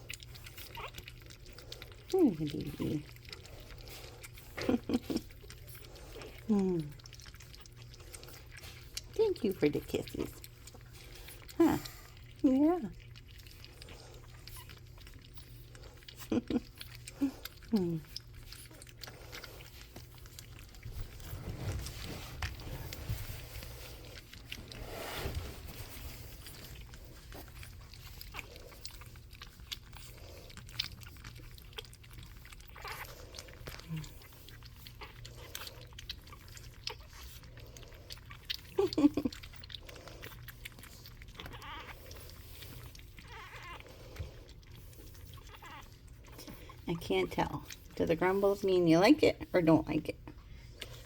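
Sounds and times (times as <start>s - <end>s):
puppies snuffling and chewing: 0.0s - 51.0s
puppy whining cries: 41.3s - 44.2s.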